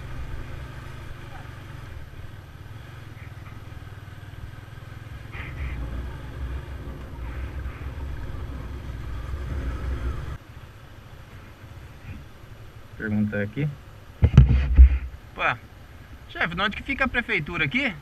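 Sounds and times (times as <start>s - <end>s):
motorcycle engine running: 0.0s - 10.7s.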